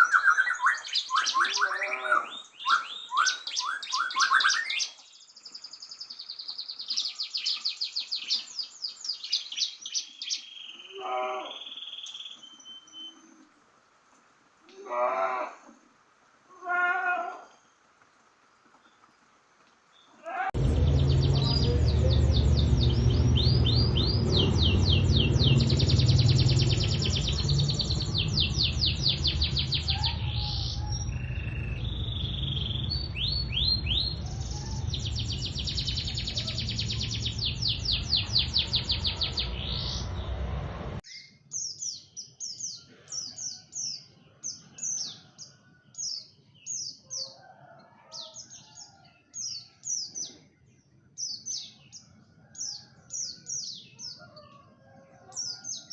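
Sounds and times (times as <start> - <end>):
songbird singing rapid high notes: 0.0 - 5.0, 20.6 - 40.3
bird chirping: 0.0 - 13.5, 19.9 - 47.5
loud low rumble: 20.6 - 41.0.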